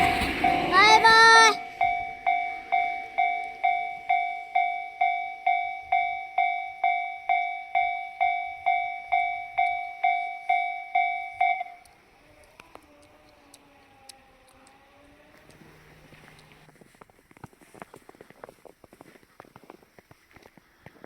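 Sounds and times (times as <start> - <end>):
level crossing alarm ringing: 0.0 - 12.5.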